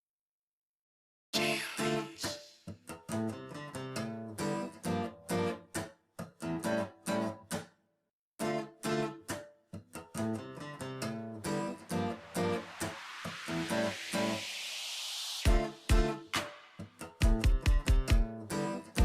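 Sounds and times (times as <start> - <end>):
plucked strings music: 17.0 - 19.0.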